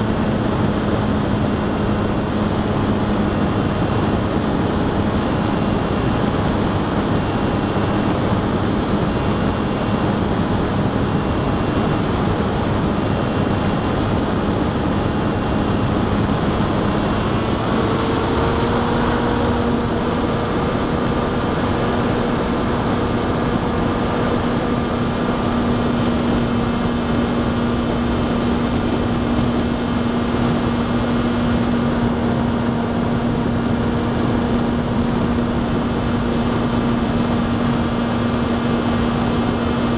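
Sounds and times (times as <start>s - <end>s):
high beep: 0.0s - 0.4s, 1.3s - 2.4s, 3.3s - 4.3s, 5.2s - 6.2s, 7.1s - 8.2s, 9.1s - 10.1s, 11.0s - 12.0s, 13.0s - 14.0s, 14.9s - 15.9s, 16.8s - 17.6s, 25.0s - 31.8s, 34.9s - 36.8s
electric motor and propeller: 0.0s - 39.9s.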